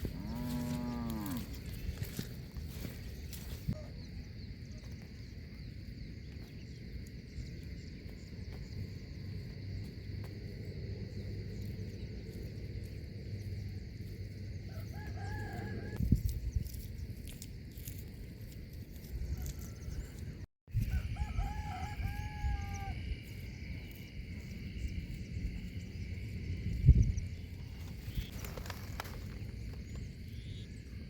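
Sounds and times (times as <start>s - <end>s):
rooster crowing: 14.7s - 16.0s, 20.8s - 23.1s.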